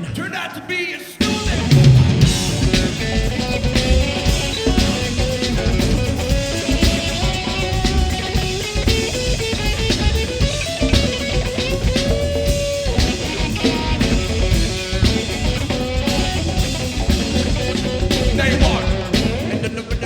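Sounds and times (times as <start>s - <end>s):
bass guitar: 1.2s - 20.0s
drum kit: 1.2s - 20.0s
electric guitar: 1.2s - 20.0s.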